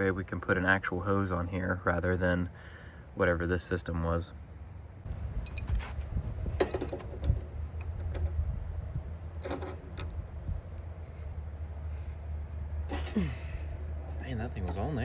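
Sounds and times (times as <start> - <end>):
low steady hum: 0.0 - 15.0
metal clicks and knocks: 6.5 - 8.4, 9.4 - 10.2.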